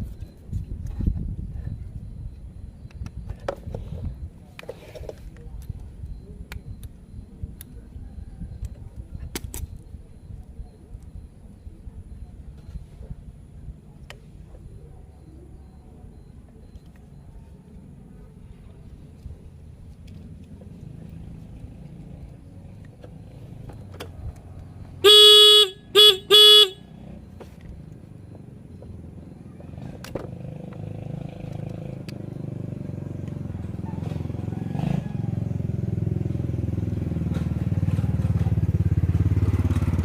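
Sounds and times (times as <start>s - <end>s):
motorcycle horn honking: 25.0s - 27.0s.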